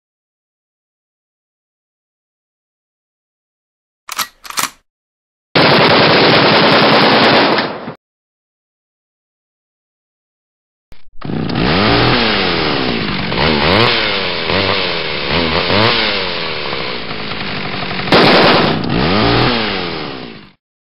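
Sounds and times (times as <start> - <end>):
small engine revving: 11.0 - 20.6.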